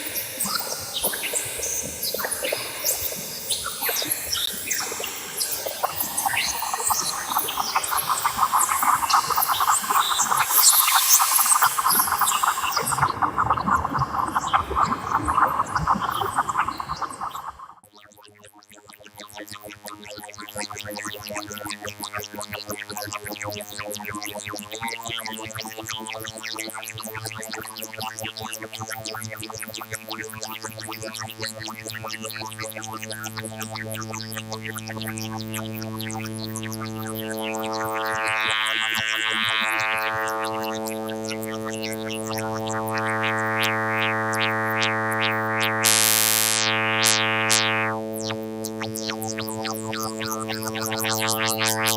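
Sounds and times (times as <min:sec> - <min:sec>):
buzzy synthesized drone: 0:34.1 - 0:51.9.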